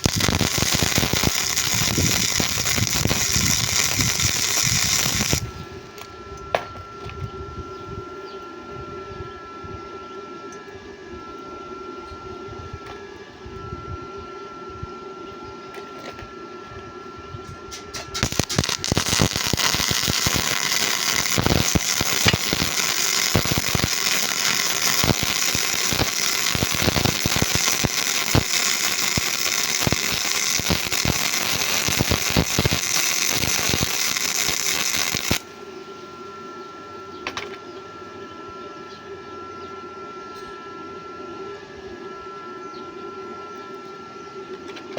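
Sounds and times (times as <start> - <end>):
welding arc crackling: 0.0 - 5.6, 17.8 - 35.6
hum with thin whistle: 0.0 - 44.9.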